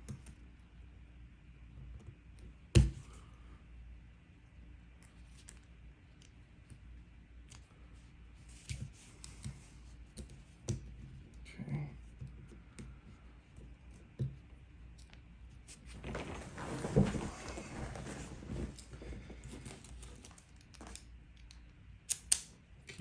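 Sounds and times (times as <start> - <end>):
rustle of handling: 15.6 - 21.0.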